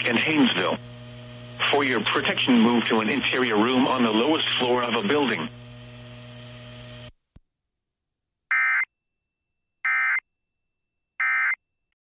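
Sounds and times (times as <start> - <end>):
steady hum: 0.0 - 7.2.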